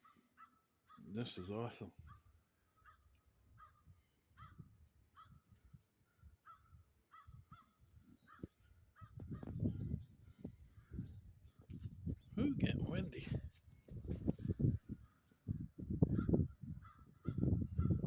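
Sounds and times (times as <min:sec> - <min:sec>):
wind buffeting microphone: 0:06.6 - 0:18.0.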